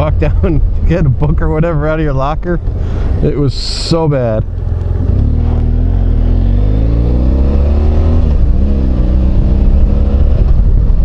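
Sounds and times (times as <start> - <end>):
low wind rush: 0.0 - 11.0
motorcycle engine accelerating: 4.4 - 11.0.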